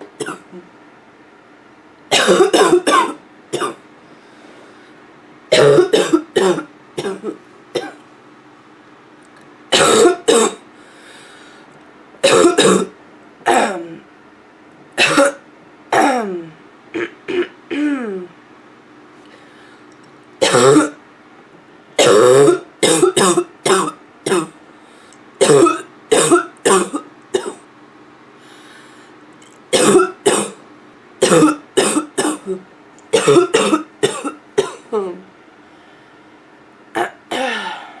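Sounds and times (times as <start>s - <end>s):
person coughing hoarsely: 0.2s - 0.6s, 2.1s - 3.8s, 5.5s - 8.0s, 9.7s - 10.6s, 12.2s - 14.0s, 15.0s - 18.3s, 20.4s - 21.0s, 22.0s - 24.6s, 25.4s - 27.6s, 29.7s - 30.6s, 31.2s - 35.2s, 37.0s - 38.0s.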